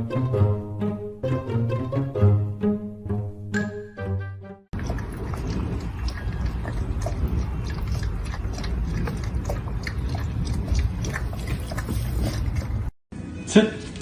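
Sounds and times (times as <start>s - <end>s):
animal chewing and crunching: 4.8s - 12.9s.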